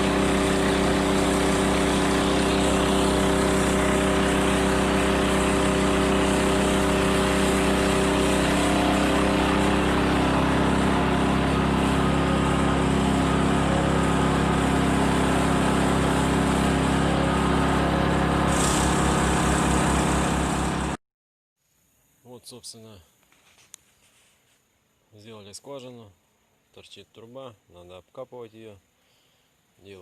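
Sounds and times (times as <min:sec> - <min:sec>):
drilling rig engine running: 0:00.0 - 0:21.0.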